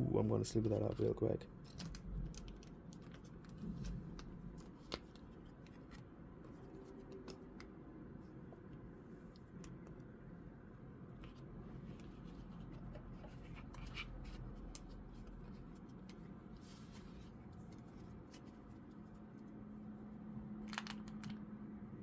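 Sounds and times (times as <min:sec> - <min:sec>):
faint low hum: 0:00.0 - 0:22.0
small clicks and scrapes: 0:00.9 - 0:07.8, 0:11.2 - 0:19.5.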